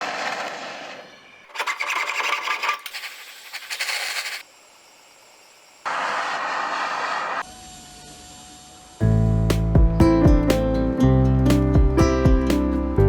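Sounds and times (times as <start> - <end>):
metal rasping and scraping: 1.5 - 4.4.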